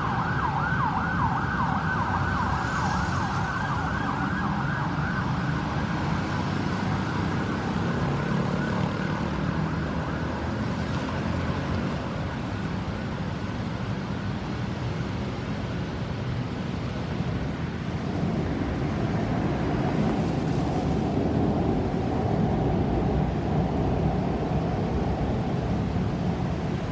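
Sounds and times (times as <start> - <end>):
emergency siren warbling: 0.0 - 10.4
road traffic noise: 0.0 - 26.9.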